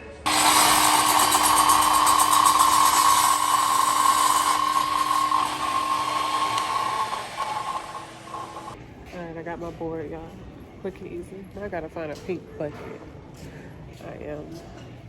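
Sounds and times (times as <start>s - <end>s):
electric saw cutting wood: 0.2s - 8.8s.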